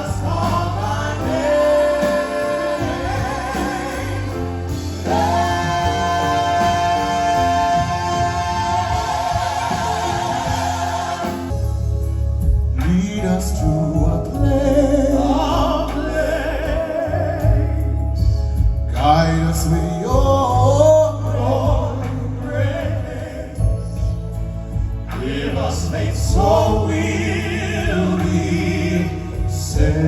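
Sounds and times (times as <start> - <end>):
operatic voices singing: 0.0 - 12.1, 12.7 - 30.0
band playing: 0.0 - 30.0
heavy bass line: 0.0 - 30.0.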